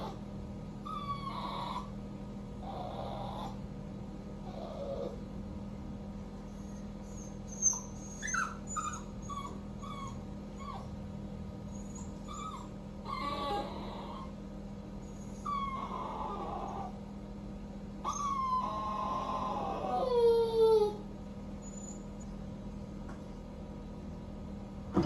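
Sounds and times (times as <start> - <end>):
puppy whining and crying: 0.0 - 2.0, 2.6 - 3.6, 4.4 - 5.3, 6.5 - 11.0, 11.7 - 14.4, 15.0 - 17.1, 18.0 - 22.4.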